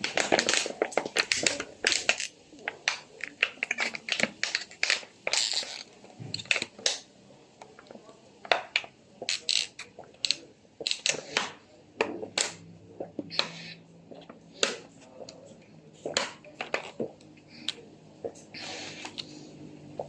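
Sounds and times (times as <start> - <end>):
plastic bottle crinkling: 0.0 - 7.1.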